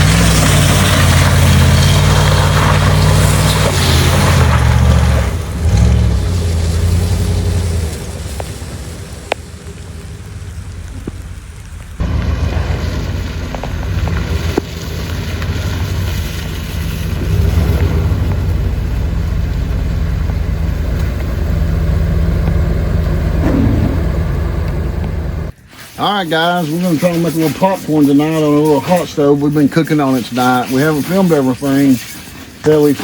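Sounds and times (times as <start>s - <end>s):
vehicle engine under heavy load: 0.0s - 25.6s.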